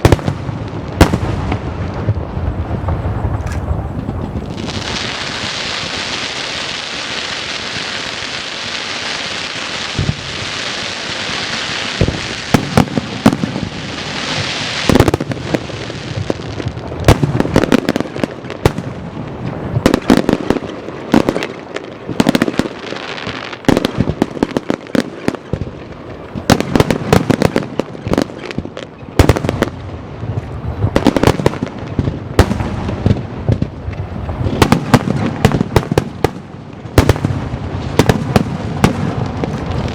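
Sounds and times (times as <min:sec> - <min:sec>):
firework hiss: 0:00.0 - 0:18.0
firework shells banging: 0:02.8 - 0:05.5.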